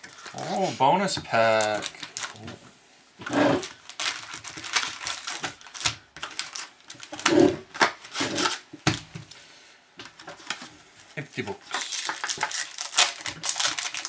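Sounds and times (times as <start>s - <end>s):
card pack wrapper crinkling: 1.5s - 2.4s, 3.6s - 8.6s, 11.6s - 14.0s.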